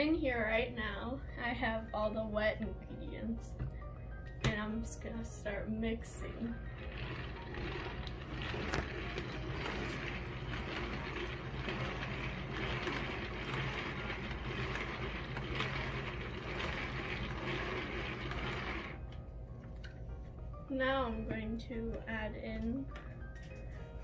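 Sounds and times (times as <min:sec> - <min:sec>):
hand mixer gears whirring: 0:03.6 - 0:20.2.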